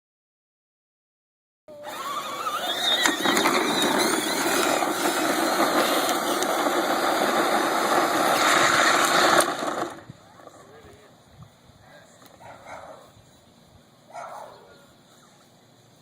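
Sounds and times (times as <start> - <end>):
electric toy motors whining: 1.7 - 10.1
wheels rumbling on ground: 1.7 - 11.6.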